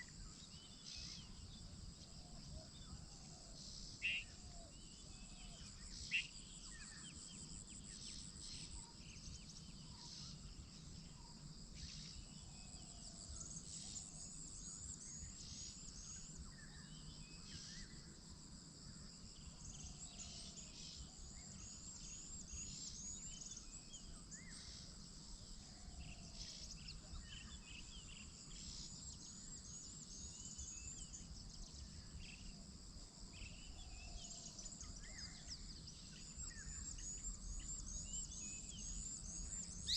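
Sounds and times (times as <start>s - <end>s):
small birds chirping: 33.4s - 39.9s.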